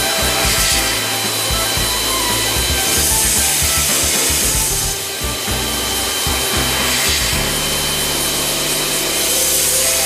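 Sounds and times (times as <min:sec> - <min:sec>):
mechanical scrubbing with hiss: 0:00.0 - 0:10.0.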